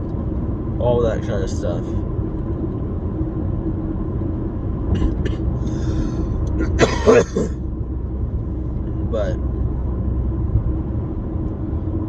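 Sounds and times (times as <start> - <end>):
car engine and tyres rumbling: 0.0 - 12.0
breath or throat noise: 5.0 - 7.5.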